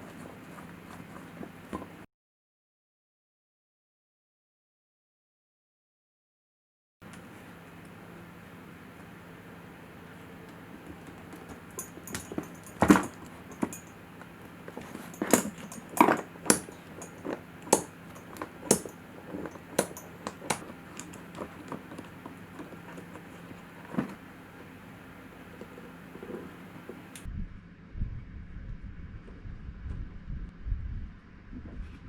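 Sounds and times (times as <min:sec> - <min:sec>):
metal tools clinking: 0:11.0 - 0:24.7.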